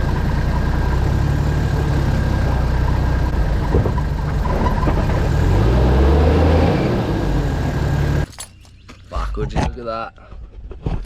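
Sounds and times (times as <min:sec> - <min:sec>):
diesel engine running: 0:00.0 - 0:08.8.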